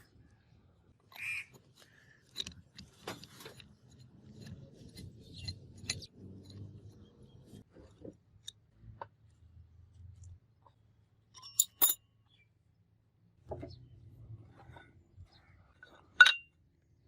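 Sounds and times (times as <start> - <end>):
light metal clinks and taps: 11.4 - 12.0.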